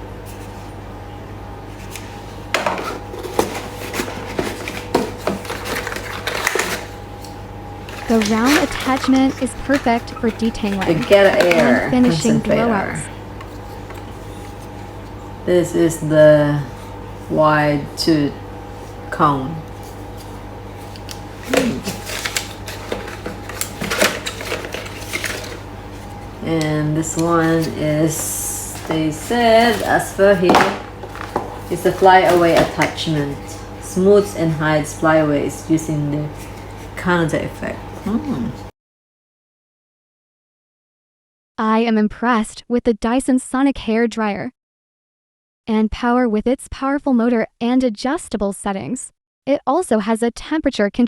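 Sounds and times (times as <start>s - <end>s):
steady low hum: 0.0s - 38.7s
plastic attachments clattering: 2.6s - 7.0s, 7.8s - 12.6s, 21.4s - 25.7s, 27.1s - 33.3s
plastic attachments clicking and knocking: 7.9s - 12.4s.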